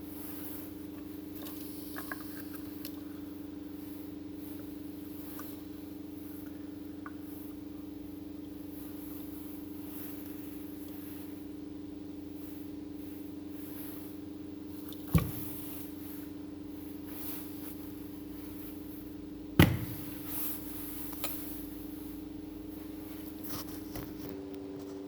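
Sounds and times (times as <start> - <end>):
electrical hum: 0.0 - 25.0
sharp knocks: 19.6 - 20.3.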